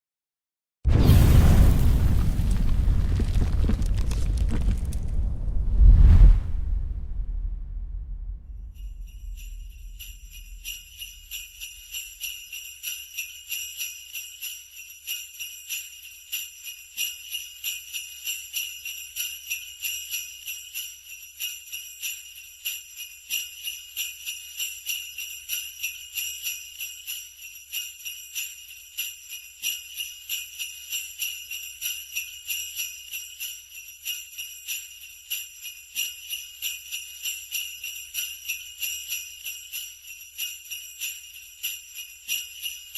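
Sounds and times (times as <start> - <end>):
low rumble: 0.9 - 11.6
sleigh bells jingling: 8.6 - 42.9.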